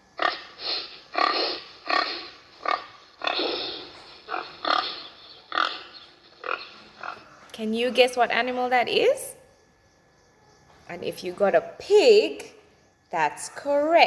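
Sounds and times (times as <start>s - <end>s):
pig grunting: 0.2s - 7.4s.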